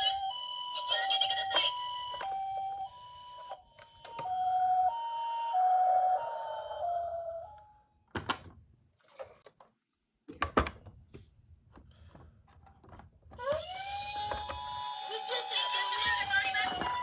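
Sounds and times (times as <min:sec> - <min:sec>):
two-tone ambulance siren: 0:00.0 - 0:07.8, 0:13.8 - 0:17.0
rising siren tone: 0:04.3 - 0:07.6.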